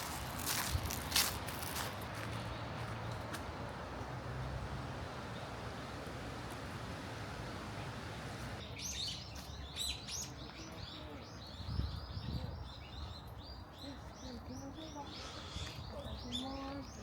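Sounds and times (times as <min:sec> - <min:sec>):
outdoor noise haze: 0:00.0 - 0:10.7
small birds chirping: 0:00.0 - 0:17.0.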